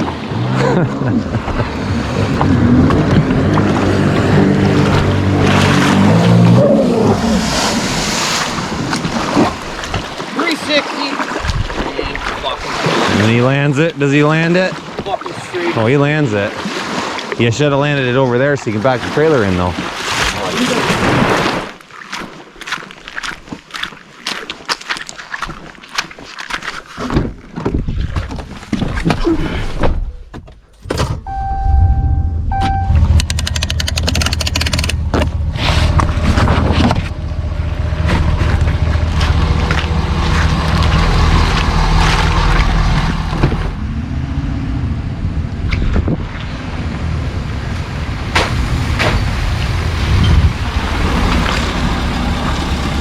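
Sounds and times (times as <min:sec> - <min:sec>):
vehicle engine rumbling: 0:00.0 - 0:10.3, 0:30.7 - 0:53.0
short beeping chime: 0:31.3 - 0:33.2
rattles and clunks: 0:32.5 - 0:43.8
knocks and thuds: 0:37.9 - 0:43.8.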